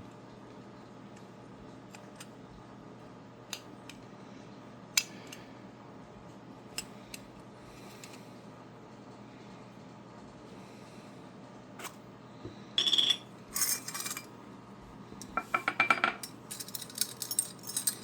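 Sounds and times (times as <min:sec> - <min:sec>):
small metal parts clinking: 0:12.8 - 0:14.3, 0:15.8 - 0:18.0.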